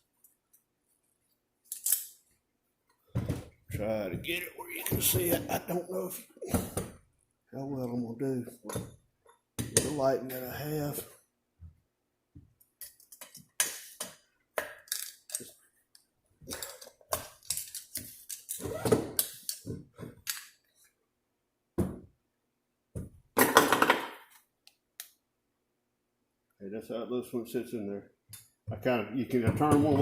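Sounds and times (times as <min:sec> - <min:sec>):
metal parts clinking and scraping: 0:01.7 - 0:02.2.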